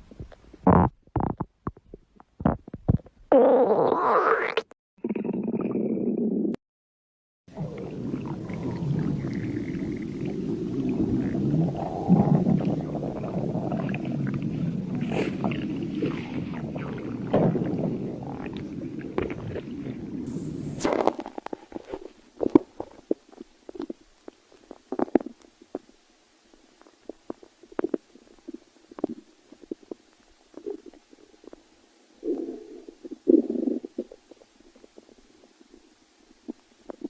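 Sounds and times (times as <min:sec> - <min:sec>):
stomach growling: 0:00.0 - 0:06.6, 0:07.5 - 0:37.0.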